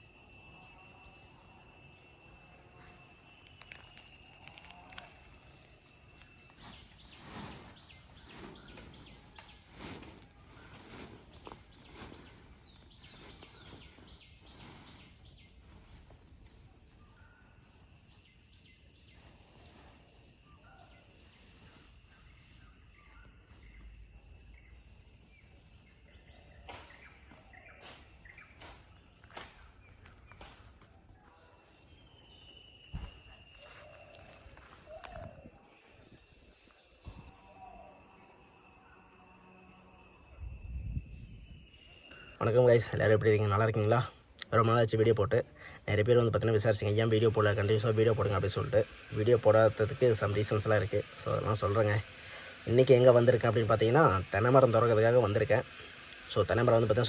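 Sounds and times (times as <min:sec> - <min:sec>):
birds chirping: 0:05.8 - 0:37.9
high-pitched hum: 0:32.2 - 0:44.0.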